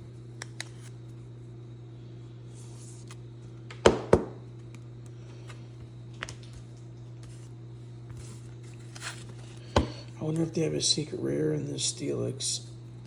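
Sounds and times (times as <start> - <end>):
steady low hum: 0.0 - 13.0
cards sliding together: 0.4 - 1.0, 8.1 - 9.9.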